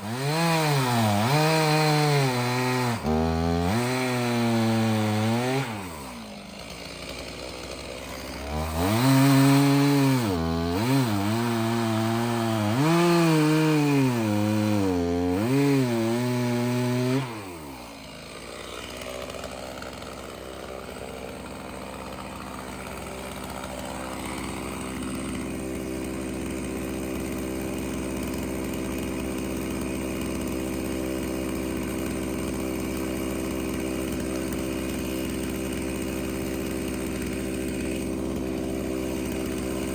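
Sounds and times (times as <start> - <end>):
chainsaw idling and revving: 0.0 - 39.9.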